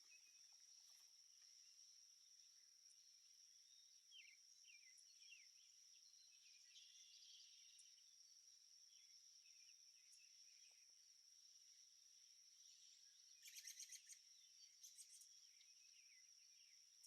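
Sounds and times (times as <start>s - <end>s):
birds chirping: 0.0s - 8.2s, 12.6s - 16.8s
crickets trilling: 0.0s - 17.0s.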